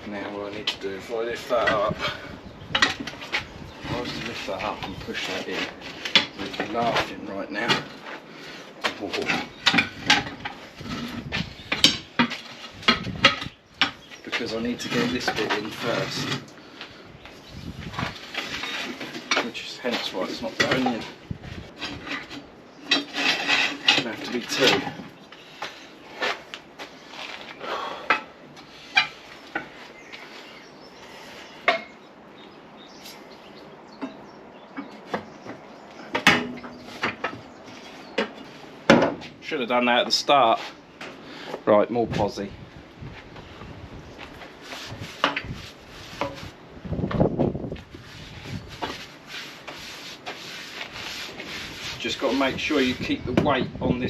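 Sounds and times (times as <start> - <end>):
rubber scraping on metal: 1.4 - 16.5, 17.6 - 25.0, 44.6 - 46.6, 47.2 - 53.3
metal tool clanking on wheel rim: 36.1 - 37.4.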